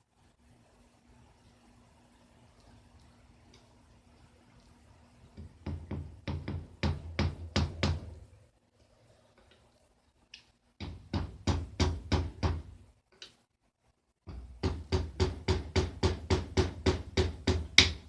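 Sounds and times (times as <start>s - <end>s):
hammer knocking on engine: 14.6s - 18.0s.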